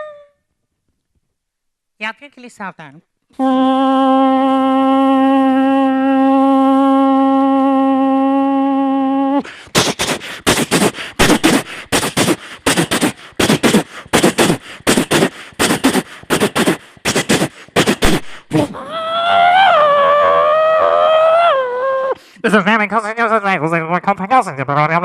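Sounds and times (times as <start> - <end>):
vocal horn-like tone: 3.4 - 18.2
beatbox mouth percussion: 9.4 - 18.8.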